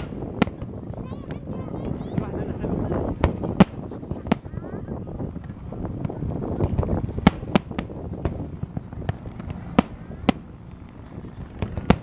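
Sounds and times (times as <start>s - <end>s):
fireworks bangs: 0.0s - 12.0s
fireworks rumble and crackle: 0.0s - 12.0s.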